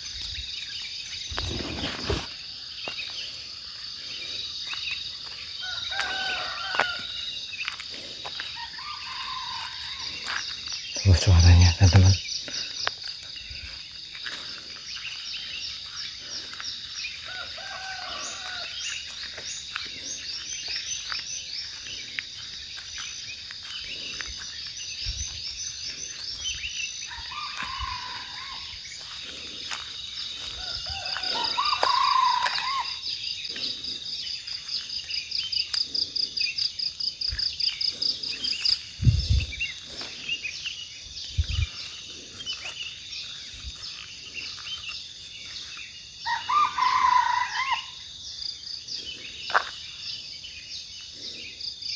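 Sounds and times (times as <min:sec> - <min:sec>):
bird calls: 0:00.0 - 0:51.9
insect buzz and trill: 0:00.0 - 0:51.9
junglefowl calling: 0:05.6 - 0:07.2, 0:08.5 - 0:10.4, 0:17.2 - 0:19.0, 0:27.0 - 0:28.7, 0:30.6 - 0:33.1, 0:46.2 - 0:48.0.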